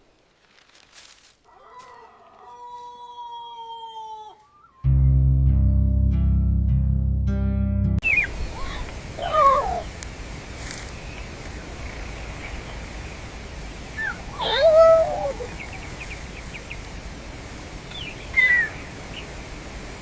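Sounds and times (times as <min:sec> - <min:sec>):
outdoor background hiss: 0:04.6 - 0:20.0.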